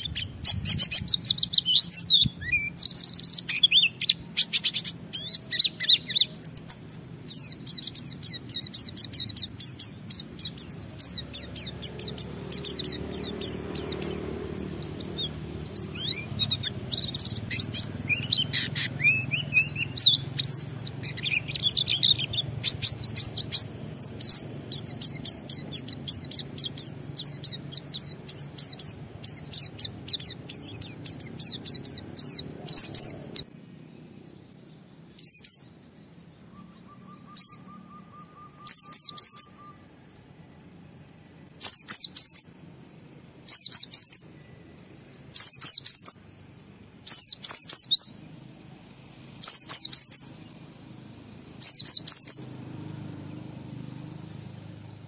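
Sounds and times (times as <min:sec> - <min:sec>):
bird singing high chirps: 0:00.0 - 0:55.0.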